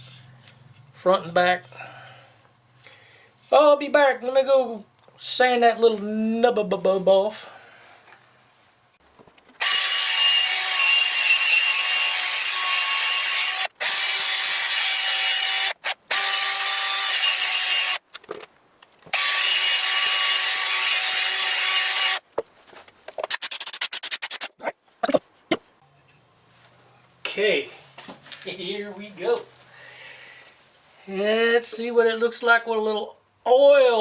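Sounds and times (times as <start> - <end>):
quick clicks: 23.3 - 24.5.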